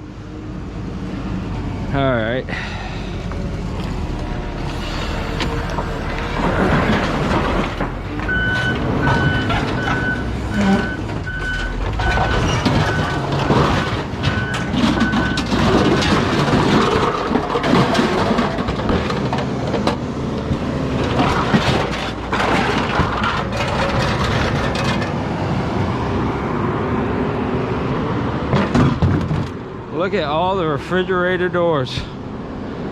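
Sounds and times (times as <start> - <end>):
heavy machinery running: 0.4 - 25.6.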